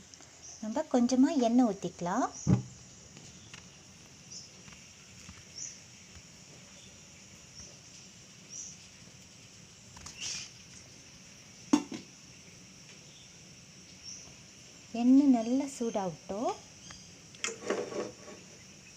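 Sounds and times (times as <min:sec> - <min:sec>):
sharp knock: 0:02.5 - 0:02.7.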